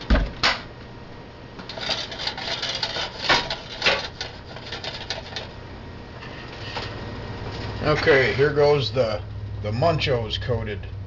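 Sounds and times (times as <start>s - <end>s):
kitchen items rattling and clicking: 1.7s - 5.5s.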